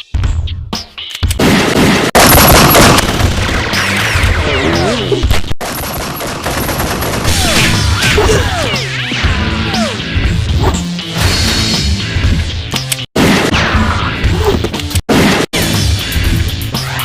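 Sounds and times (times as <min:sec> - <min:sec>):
rapid gunfire: 0:01.4 - 0:04.4, 0:05.6 - 0:08.0.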